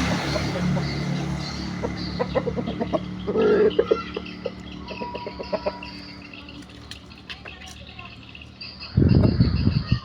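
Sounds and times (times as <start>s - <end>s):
chicken clucking: 1.8s - 7.0s.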